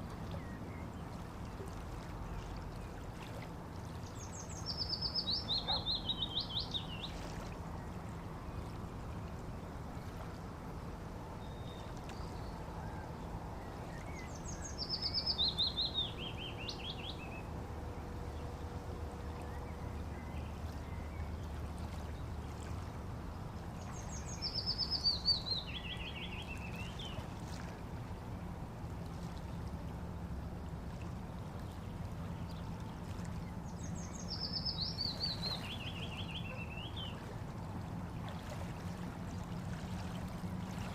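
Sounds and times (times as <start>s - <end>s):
flowing water: 0.0s - 40.9s
songbird singing with trill: 4.1s - 7.2s, 11.4s - 17.5s, 23.9s - 27.2s, 33.5s - 37.2s.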